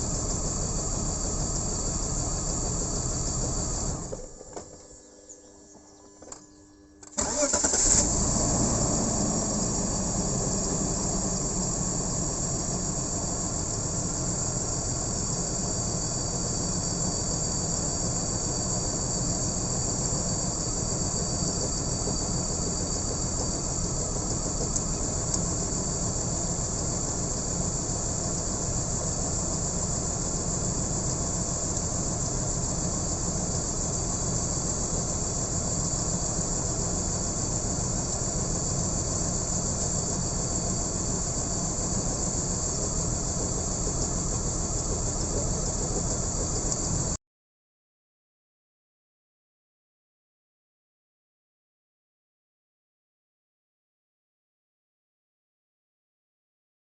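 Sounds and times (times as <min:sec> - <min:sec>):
car engine idling: 0:00.0 - 0:04.4, 0:07.1 - 0:47.2.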